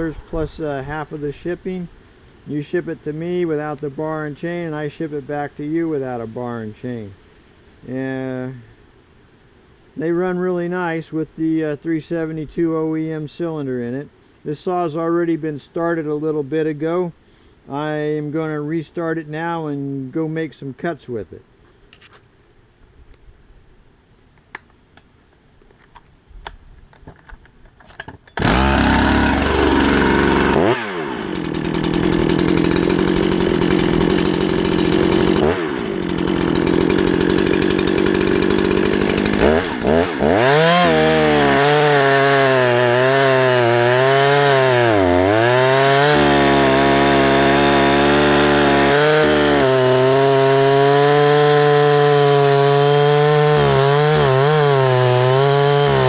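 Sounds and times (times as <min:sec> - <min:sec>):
chainsaw starting and revving: 0:28.4 - 0:56.0.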